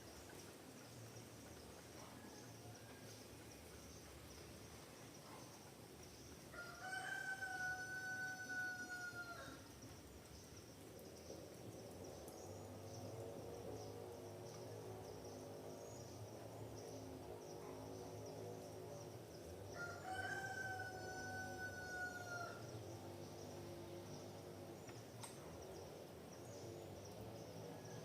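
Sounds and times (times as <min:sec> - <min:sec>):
rooster crowing: 0:06.5 - 0:09.6, 0:19.7 - 0:22.6.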